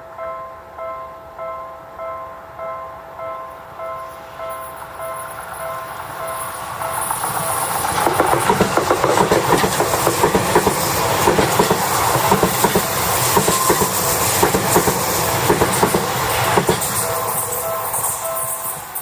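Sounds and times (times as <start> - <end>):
faint crossing warning bell: 0.0 - 19.0
train wheels clattering over rails: 4.6 - 19.0.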